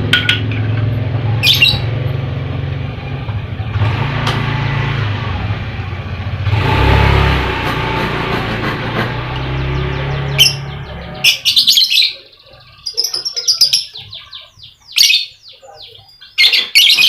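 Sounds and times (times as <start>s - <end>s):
bird chirping: 1.3s - 2.0s, 8.5s - 17.0s.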